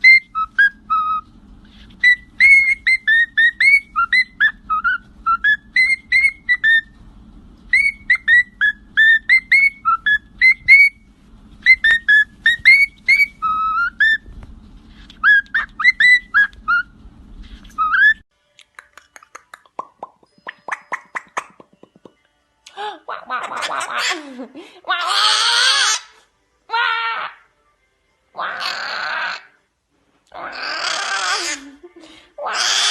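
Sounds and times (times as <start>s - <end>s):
parrot whistling chirping notes: 0.0s - 7.0s, 7.7s - 14.3s, 15.1s - 18.2s, 20.3s - 21.6s.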